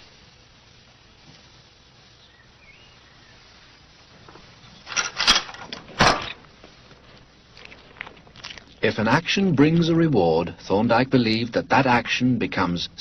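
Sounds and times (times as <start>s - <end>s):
latch and door clattering: 4.9s - 6.4s.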